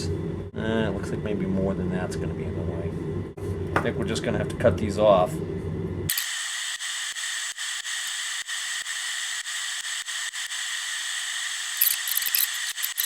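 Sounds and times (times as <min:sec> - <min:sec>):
power tool cutting circuit board: 0:06.1 - 0:13.0.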